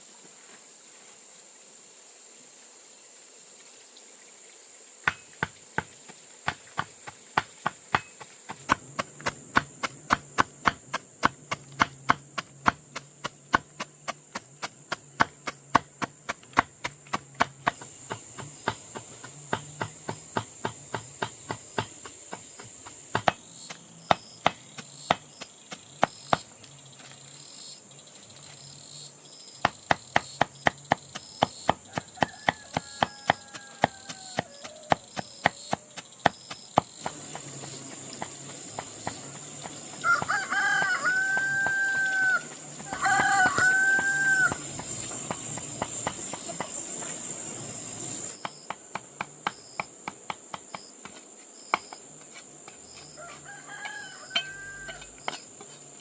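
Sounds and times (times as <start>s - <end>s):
rapid sharp knocks: 6.5s - 23.4s.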